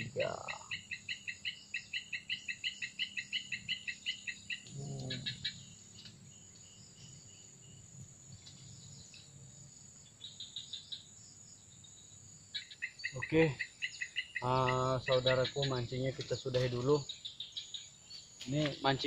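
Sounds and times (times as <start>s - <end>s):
high insect drone: 0.0s - 19.0s
rapid chirps: 12.5s - 19.0s.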